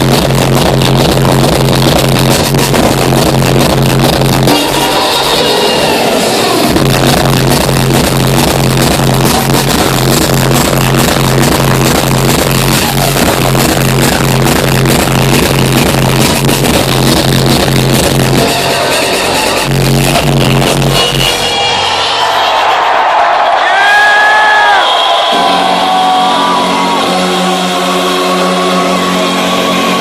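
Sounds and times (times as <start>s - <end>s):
heavy kick drum pounding: 0.0s - 4.5s, 6.7s - 18.4s
hardstyle dance music: 0.0s - 30.0s.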